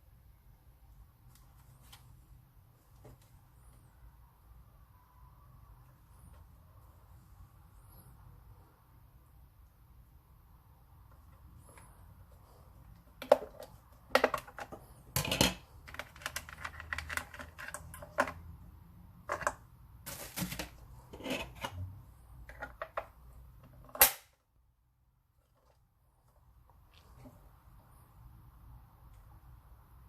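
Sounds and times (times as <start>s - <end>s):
packaging handling clicks and rustles: 12.9s - 18.4s.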